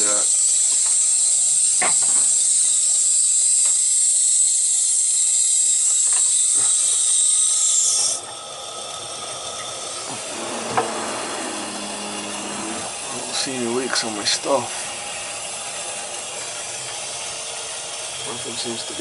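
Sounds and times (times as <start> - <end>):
air hissing from valve: 0.0 - 19.0.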